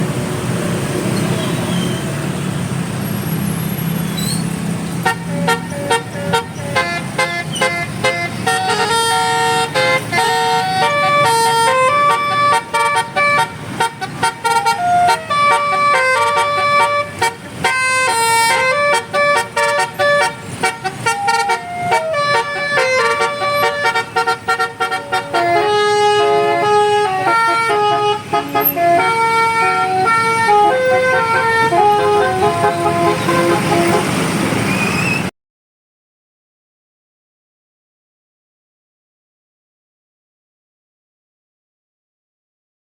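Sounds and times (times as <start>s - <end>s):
multi-tone air horn melody: 5.0s - 34.4s.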